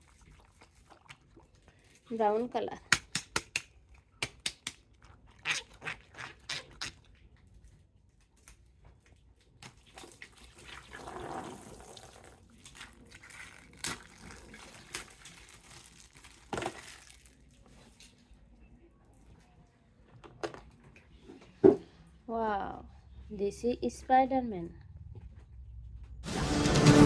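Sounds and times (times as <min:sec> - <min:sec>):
plastic toys clicking and tapping: 0:02.9 - 0:05.0
packaging rustle: 0:12.8 - 0:18.2.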